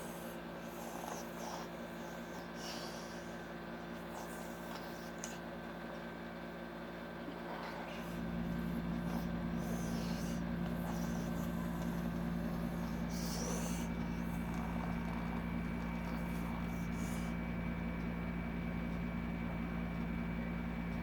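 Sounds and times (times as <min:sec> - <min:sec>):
child fake-snoring: 0:00.0 - 0:05.5, 0:07.2 - 0:17.4
low electrical hum: 0:00.0 - 0:21.0.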